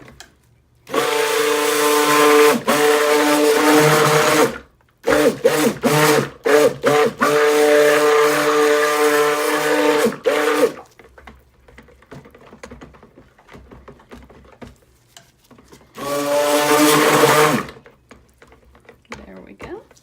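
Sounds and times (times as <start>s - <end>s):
stick blender motor whine: 0.9s - 10.9s, 15.9s - 17.9s.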